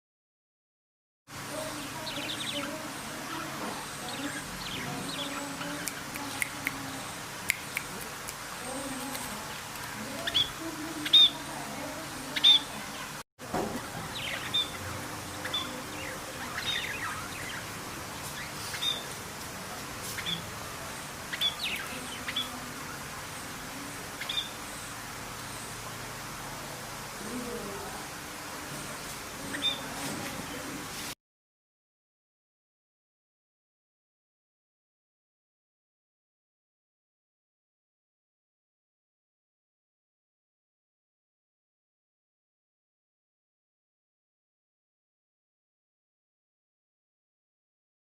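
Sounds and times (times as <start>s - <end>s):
steady background noise: 1.3s - 31.2s
birds chirping: 1.4s - 30.9s.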